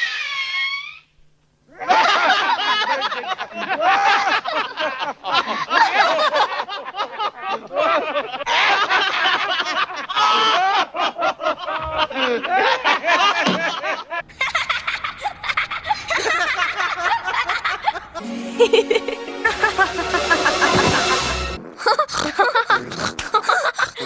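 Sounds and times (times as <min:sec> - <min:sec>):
cartoon characters laughing: 0:14.3 - 0:21.2, 0:21.8 - 0:24.0
falling tone: 0:17.8 - 0:21.7.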